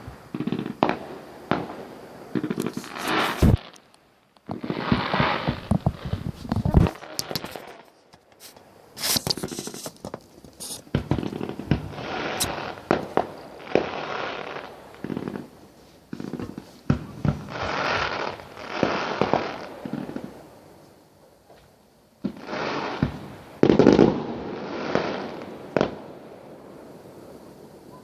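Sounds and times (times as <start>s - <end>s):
fireworks bangs: 0.0s - 20.3s
fireworks crackling hiss: 0.0s - 28.0s.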